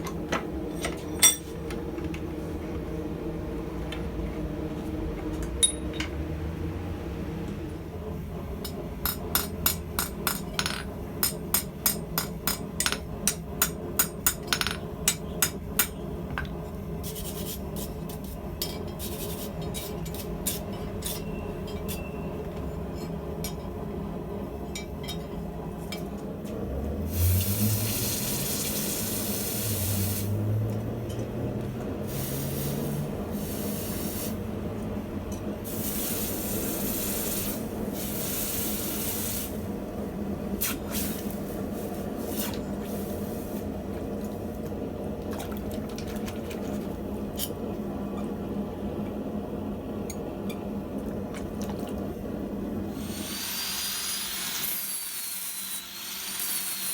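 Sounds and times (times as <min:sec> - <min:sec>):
hammer striking steel on anvil: 0:05.6 - 0:06.1, 0:08.6 - 0:16.0
loud hiss: 0:27.1 - 0:30.4, 0:32.1 - 0:34.4, 0:35.7 - 0:39.7, 0:53.0 - 0:56.9.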